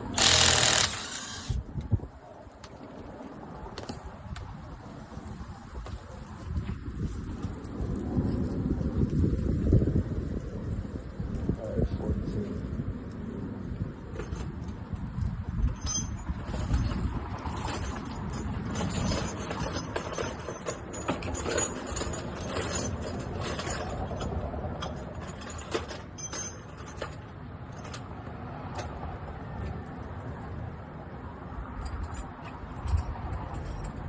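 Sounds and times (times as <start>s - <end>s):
metal hand tools clinking: 0.1s - 1.6s.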